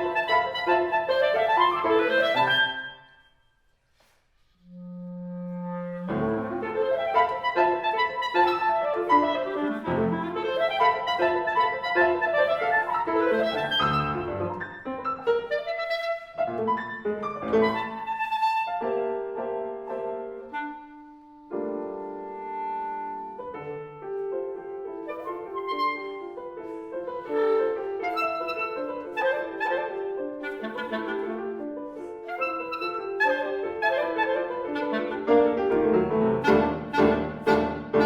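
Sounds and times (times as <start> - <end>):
clarinet: 0.0 - 3.4, 4.0 - 38.0
piano: 0.0 - 38.0.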